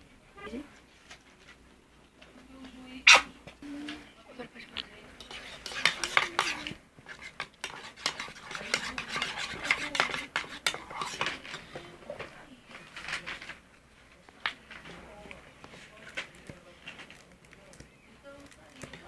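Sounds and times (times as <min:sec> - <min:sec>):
utensil scraping in a bowl: 0:05.1 - 0:13.5.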